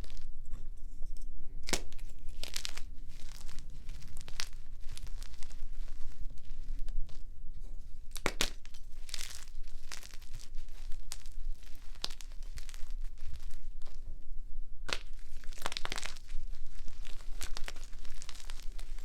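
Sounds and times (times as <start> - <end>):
chalk blocks crunching: 1.6 - 6.2, 8.1 - 14.0, 14.9 - 19.0.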